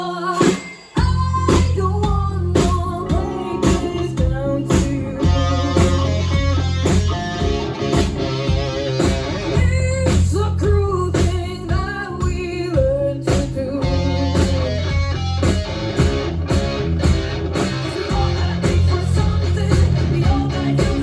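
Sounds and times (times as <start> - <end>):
person singing: 0.0 - 7.3, 9.5 - 14.8, 17.9 - 21.0
steady drum beat: 0.4 - 21.0
bass guitar: 1.0 - 21.0
electric guitar: 1.0 - 21.0.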